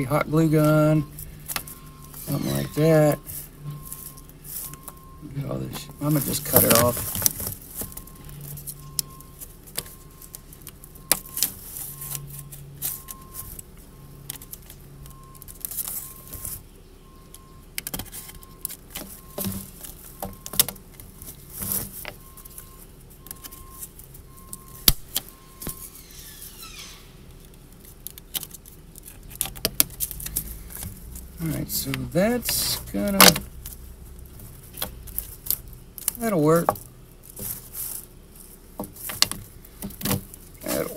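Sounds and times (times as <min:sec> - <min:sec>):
faint repeating beep: 0:00.8 - 0:07.0.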